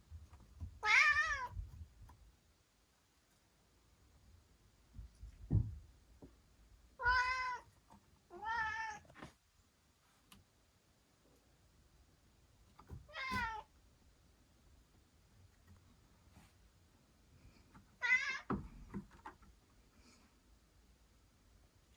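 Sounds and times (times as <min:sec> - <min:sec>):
young cat meowing: 0:00.8 - 0:01.5, 0:07.0 - 0:07.6, 0:08.3 - 0:09.0, 0:13.1 - 0:13.6
soft low thump: 0:05.0 - 0:06.4.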